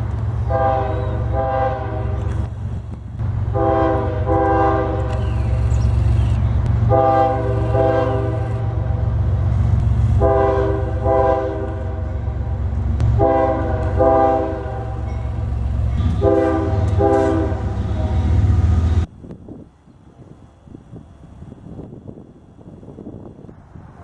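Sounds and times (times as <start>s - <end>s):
train rumbling: 0.0s - 24.0s
locomotive air horn blasts: 0.4s - 2.6s, 3.3s - 15.4s, 16.0s - 19.1s.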